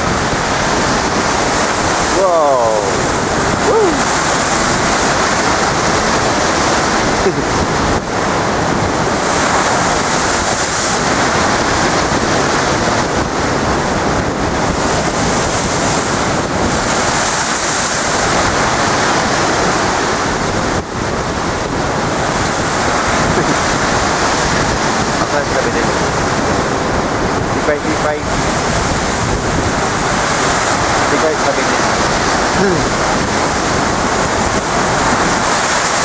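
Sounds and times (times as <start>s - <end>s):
waves breaking against wall: 0.0s - 36.0s
wind buffeting microphone: 0.0s - 36.0s.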